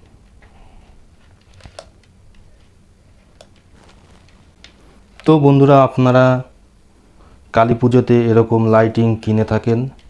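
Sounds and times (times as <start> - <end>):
faint wire handling noise: 0.0 - 5.4.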